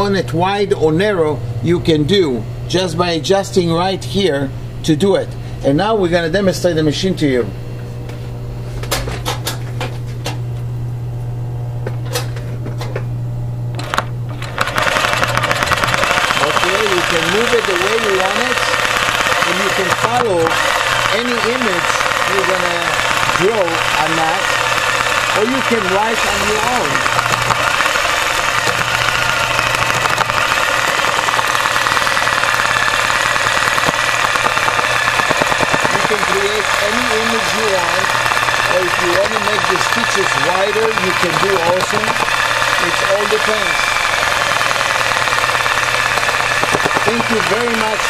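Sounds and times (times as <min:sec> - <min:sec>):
sewing machine motor humming: 0:13.8 - 0:48.0.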